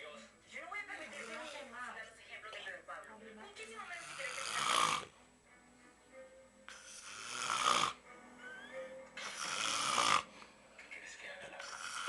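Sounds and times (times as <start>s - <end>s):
man snoring loudly: 4.0s - 5.1s, 6.7s - 8.0s, 9.2s - 10.3s, 11.6s - 12.0s.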